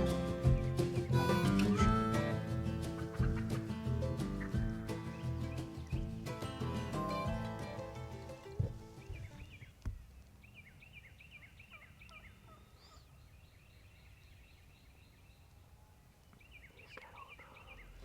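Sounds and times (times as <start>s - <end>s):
wild turkey gobbling: 0.9s - 4.7s.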